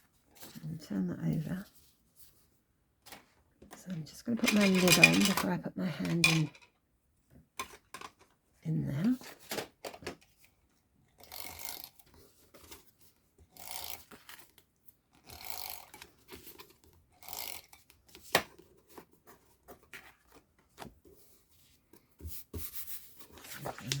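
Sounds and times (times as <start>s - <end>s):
paper scraping: 22.8s - 24.0s.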